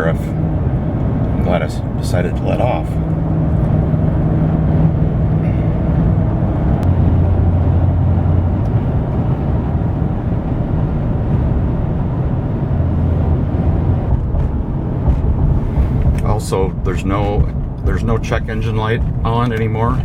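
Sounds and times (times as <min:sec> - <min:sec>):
road noise: 0:00.0 - 0:20.0
truck engine rumble: 0:00.0 - 0:20.0.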